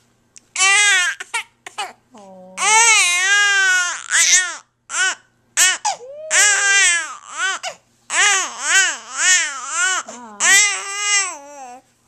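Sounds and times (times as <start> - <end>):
baby cooing and babbling: 2.6 - 11.8.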